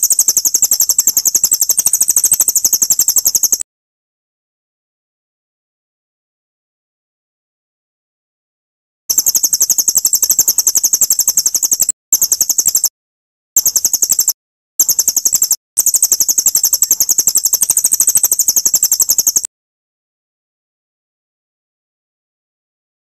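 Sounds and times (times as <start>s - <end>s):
bird singing high rapid trill: 0.0s - 3.6s, 9.1s - 12.9s, 13.6s - 19.5s.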